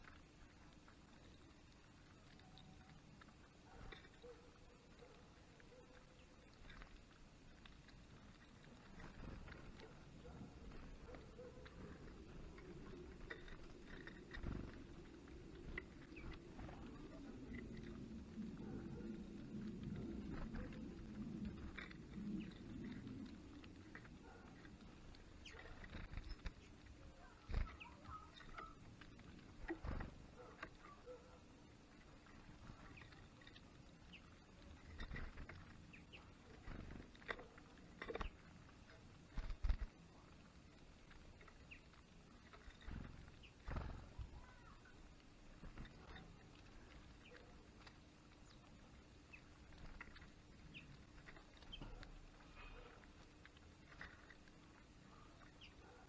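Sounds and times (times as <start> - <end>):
low steady hum: 0.0 - 56.0
small birds chirping: 0.0 - 56.0
faint bird chirps: 24.2 - 29.0, 41.4 - 47.7, 48.4 - 53.0.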